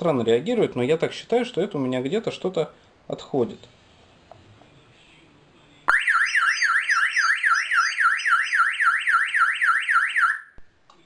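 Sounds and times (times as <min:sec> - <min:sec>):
car alarm siren warbling: 0:05.9 - 0:10.6.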